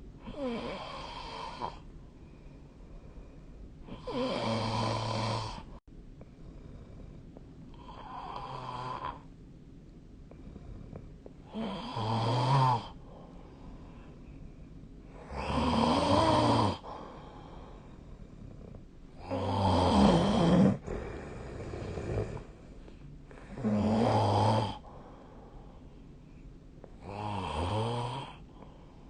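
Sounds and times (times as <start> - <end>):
person snoring: 0.2 - 1.8, 3.9 - 5.8, 6.6 - 9.3, 10.4 - 13.2, 15.1 - 25.7, 27.0 - 28.8.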